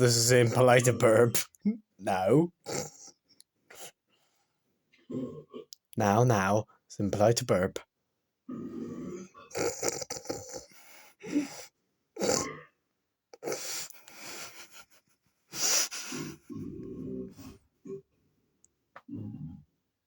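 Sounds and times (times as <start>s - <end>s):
low croaking burp: 2.6s - 3.2s, 5.0s - 5.8s, 8.5s - 10.8s, 12.2s - 12.8s, 16.5s - 18.0s, 19.0s - 19.6s
breathy gasps and wheezes: 8.5s - 12.6s, 13.4s - 14.8s, 15.5s - 18.0s.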